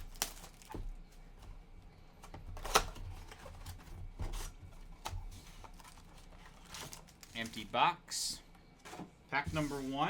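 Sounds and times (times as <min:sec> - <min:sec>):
cellophane crinkling: 0:00.0 - 0:00.8, 0:05.6 - 0:08.0
sharp plastic crackle: 0:00.0 - 0:00.8, 0:05.9 - 0:07.8.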